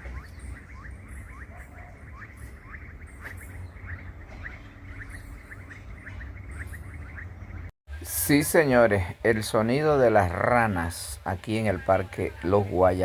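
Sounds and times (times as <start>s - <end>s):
frogs chirping: 0.0s - 7.7s.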